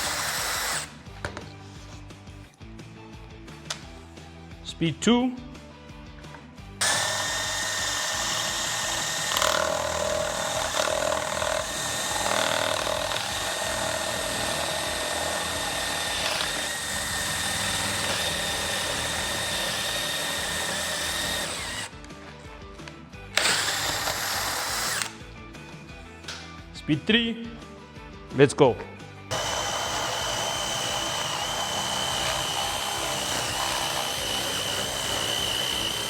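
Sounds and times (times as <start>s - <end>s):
drill motor whine boring wood: 0.0s - 0.9s, 6.8s - 21.9s, 23.4s - 25.1s, 29.3s - 36.0s.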